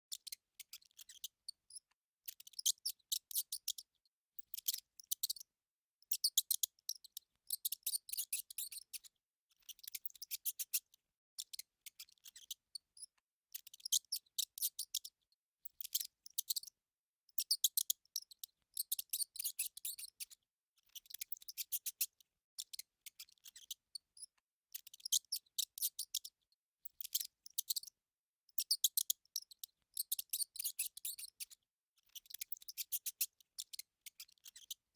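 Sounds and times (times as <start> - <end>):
rat high-pitched clicking: 6.1 - 9.0, 26.9 - 27.9, 28.6 - 34.8.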